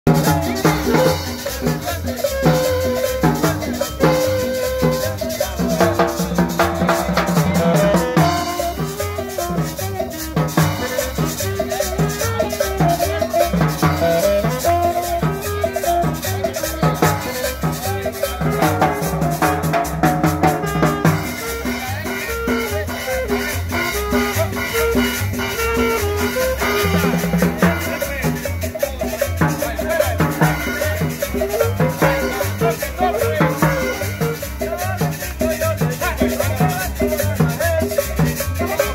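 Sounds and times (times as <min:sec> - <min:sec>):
cumbia dance music: 0:00.0 - 0:38.9.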